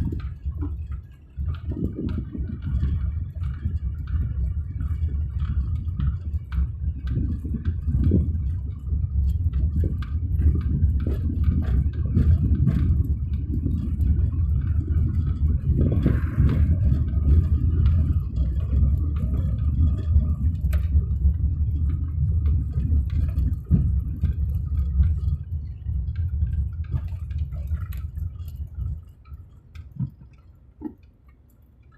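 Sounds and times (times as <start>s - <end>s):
car rumbling on rough track: 0.0s - 29.0s
knocks and rattles: 26.8s - 31.2s.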